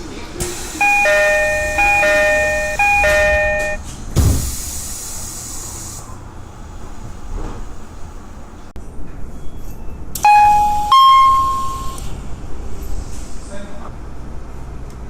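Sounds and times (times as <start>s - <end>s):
train doors thumping shut: 0.4s - 4.9s
hiss: 4.2s - 6.2s
two-note electronic chime: 10.3s - 12.0s.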